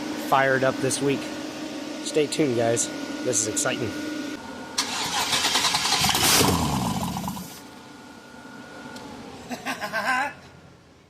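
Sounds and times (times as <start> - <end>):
engine cranking and coughing: 4.8 - 7.6.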